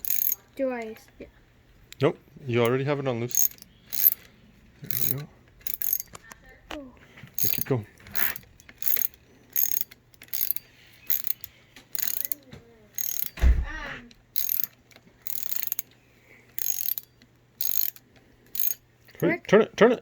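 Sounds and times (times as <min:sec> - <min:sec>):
ratchet wrench clicking: 0:00.0 - 0:00.4, 0:02.6 - 0:06.2, 0:07.3 - 0:13.4, 0:14.1 - 0:19.2.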